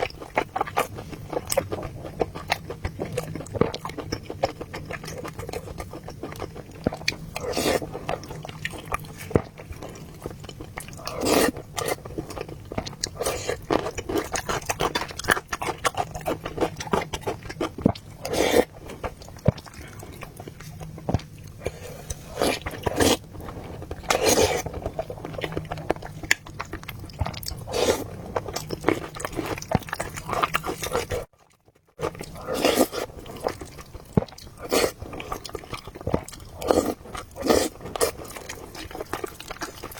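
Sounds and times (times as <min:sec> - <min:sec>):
close chewing and biting: 0:00.0 - 0:39.9.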